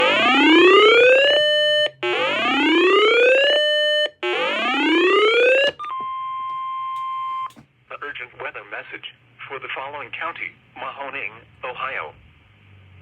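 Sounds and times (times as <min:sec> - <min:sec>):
electronic whoop siren: 0:00.0 - 0:07.3.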